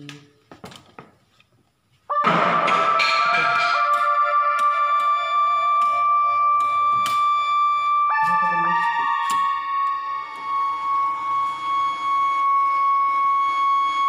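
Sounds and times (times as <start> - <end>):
sustained keyboard chords: 2.1 - 13.3.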